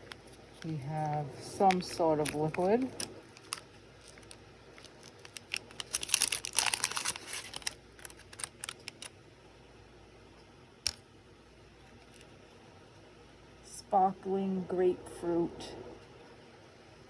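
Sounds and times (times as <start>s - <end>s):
packaging crinkling: 0.0s - 9.2s.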